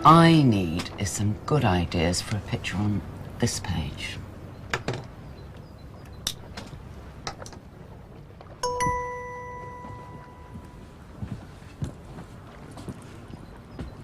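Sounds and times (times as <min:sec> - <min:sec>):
bright chime note ringing: 0:08.6 - 0:10.8.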